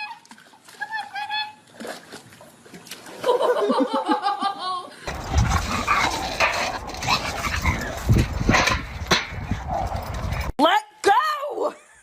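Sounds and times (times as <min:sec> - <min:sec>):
people laughing: 0:03.3 - 0:05.0.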